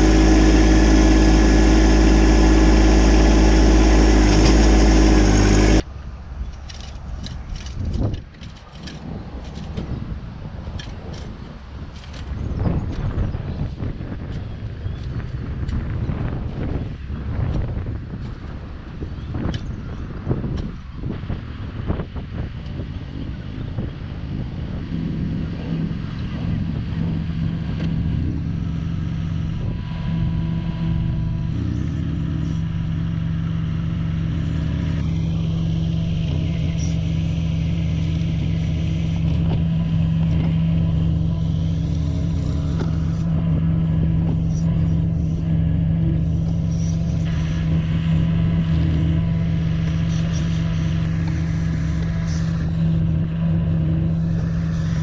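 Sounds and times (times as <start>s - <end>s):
small machine engine running: 0.0s - 5.8s, 24.9s - 55.0s.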